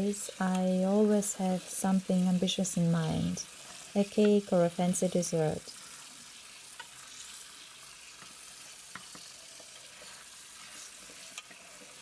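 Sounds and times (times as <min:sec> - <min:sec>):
faint steady hiss: 0:00.0 - 0:12.0.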